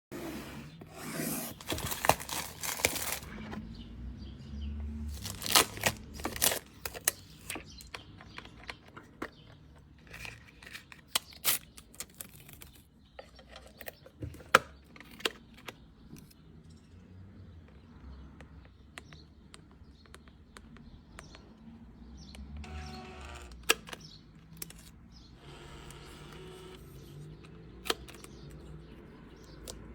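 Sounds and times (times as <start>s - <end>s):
packaging rustling and tearing: 1.4s - 3.4s, 5.1s - 7.5s
plastic parts clicking and knocking: 5.7s - 16.4s.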